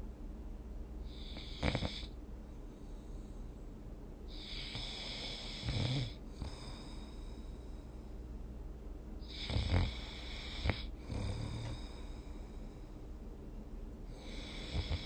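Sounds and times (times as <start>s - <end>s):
person snoring: 1.1s - 2.1s, 4.3s - 7.4s, 9.2s - 12.5s, 14.1s - 15.0s.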